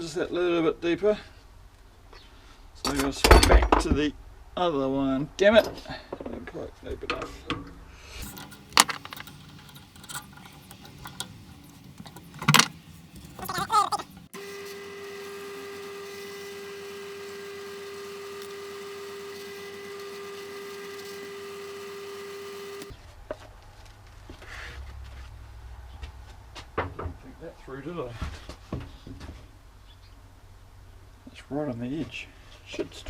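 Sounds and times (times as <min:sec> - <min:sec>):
knocks and clicks: 0:08.2 - 0:14.3
drill press motor hum: 0:08.2 - 0:22.9.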